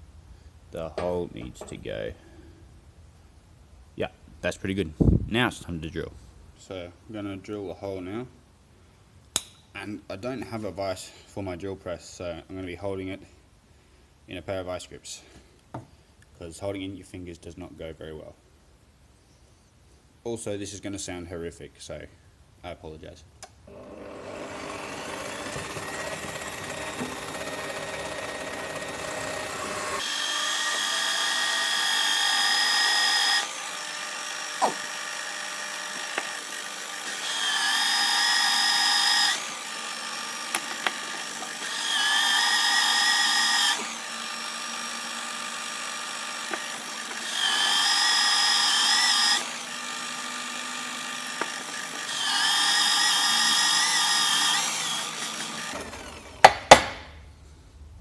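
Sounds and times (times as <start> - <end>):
drill press motor running: 23.7 - 56.6.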